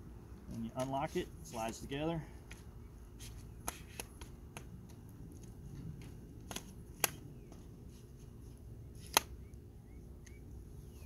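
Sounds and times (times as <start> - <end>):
tripod leg clicks and knocks: 3.6 - 7.6, 9.0 - 9.4.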